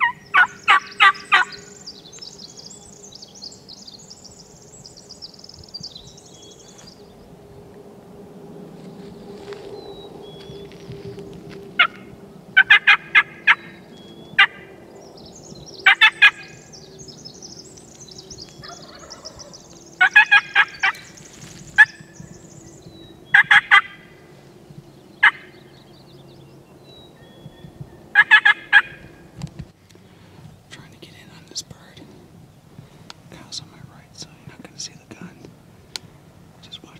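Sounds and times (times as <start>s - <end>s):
turkeys gobbling: 0.0s - 1.6s, 11.8s - 13.7s, 15.8s - 16.5s, 18.6s - 21.1s, 21.8s - 22.1s, 23.3s - 24.0s, 25.2s - 25.5s, 28.1s - 29.2s
sharp turkey notes: 0.0s - 1.7s, 11.8s - 13.8s, 18.6s - 21.1s, 28.1s - 29.2s.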